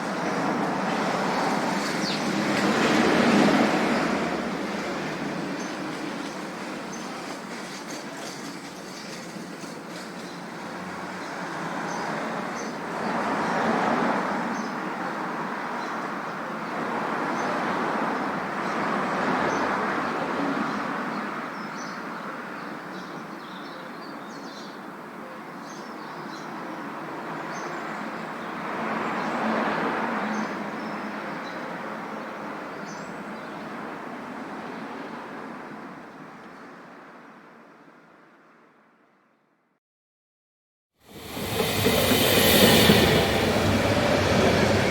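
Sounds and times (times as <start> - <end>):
vehicle noise: 41.1 - 44.9.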